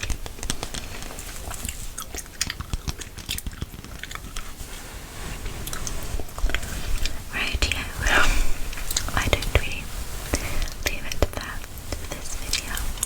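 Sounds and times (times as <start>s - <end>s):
gum chewing: 0.0s - 4.6s, 5.5s - 9.7s.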